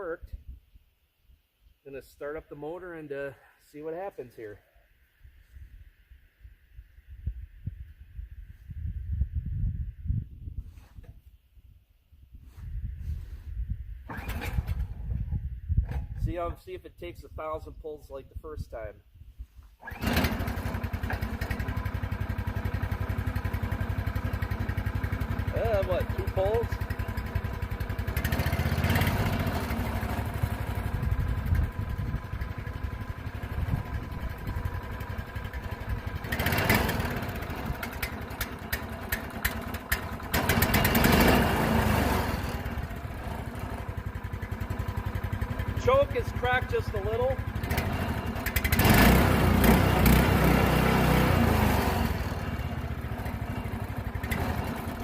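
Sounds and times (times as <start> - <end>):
small engine running: 19.8 - 55.0.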